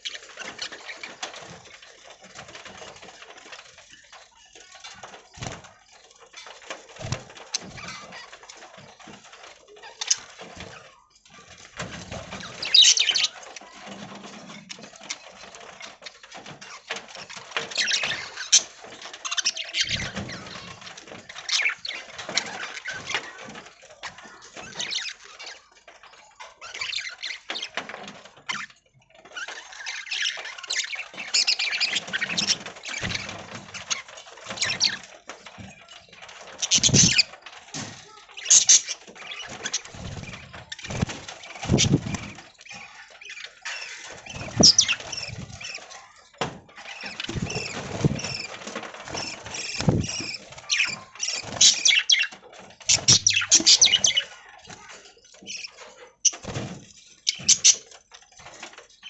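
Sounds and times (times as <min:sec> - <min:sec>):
budgies chirping and chattering: 0:00.0 - 0:59.0.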